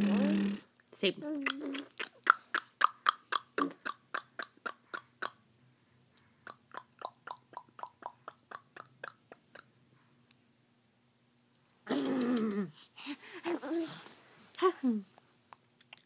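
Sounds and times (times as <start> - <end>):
child clicking with mouth: 1.4 - 5.4.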